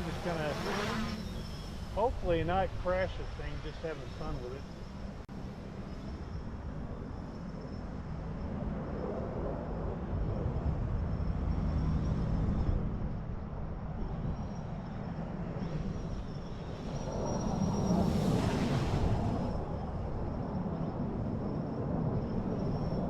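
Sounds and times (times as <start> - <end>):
drone motors buzzing: 0.0 - 5.2
wind rumbling on microphone: 0.0 - 23.0.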